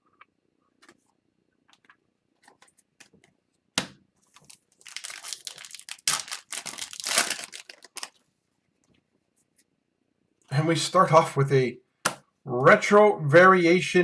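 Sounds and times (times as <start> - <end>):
foil wrapper crinkling and tearing: 4.3 - 8.2
foil wrapper snap: 4.4 - 8.2.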